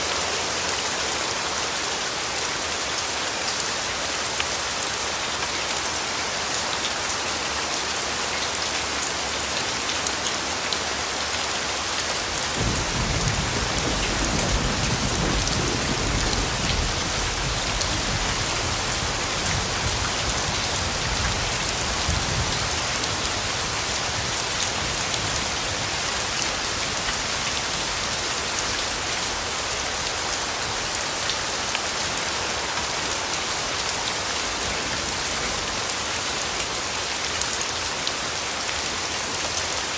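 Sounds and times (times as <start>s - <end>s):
steady rain: 0.0s - 39.9s
low thunder rumble: 12.6s - 20.1s.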